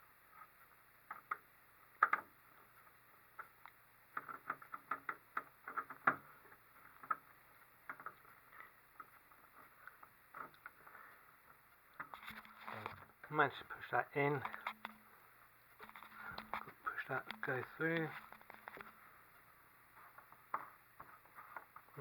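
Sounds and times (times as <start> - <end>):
small parts clicking and scraping: 11.9 - 13.0, 14.2 - 15.1, 15.8 - 19.0.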